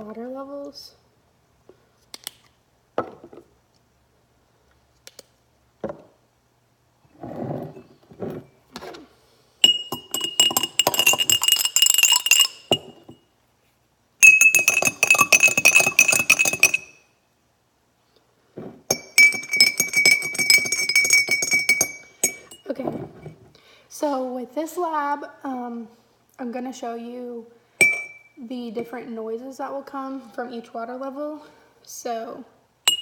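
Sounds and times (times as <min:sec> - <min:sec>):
spoon clinking glass jars: 0:09.6 - 0:13.2, 0:14.2 - 0:17.0, 0:18.9 - 0:23.3, 0:27.8 - 0:28.3.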